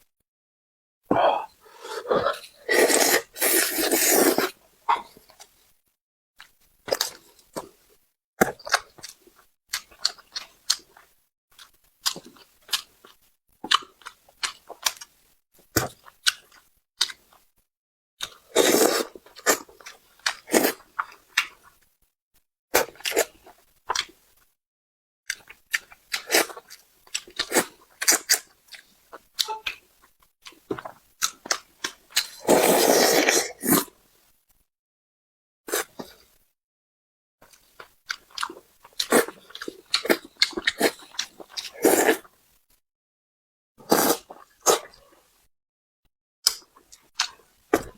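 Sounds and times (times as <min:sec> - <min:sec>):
sucking or slurping: 0:01.1 - 0:04.6, 0:18.6 - 0:19.6, 0:32.3 - 0:33.9, 0:39.0 - 0:42.3
wet chewing and lip smacks: 0:37.4 - 0:41.7, 0:46.5 - 0:47.9.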